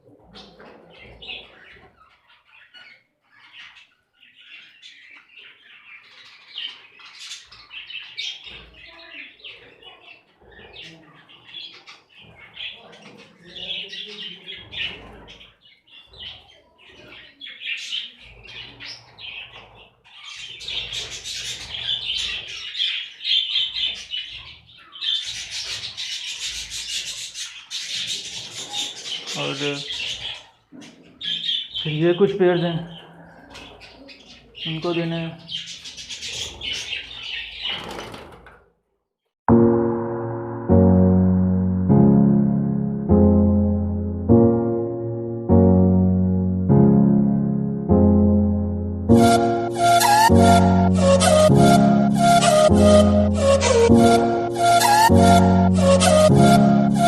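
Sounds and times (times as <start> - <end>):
birds chirping and chattering: 0.0 - 38.2, 43.4 - 57.0.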